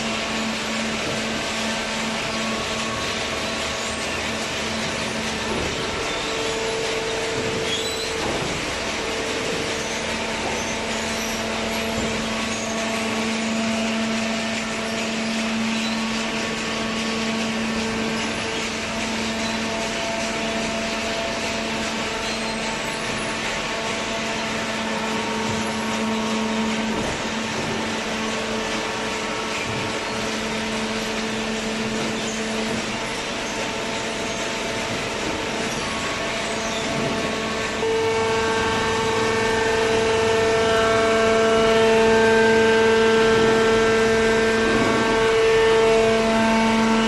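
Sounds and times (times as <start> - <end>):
hydraulic baler motor humming: 0.0 - 47.0.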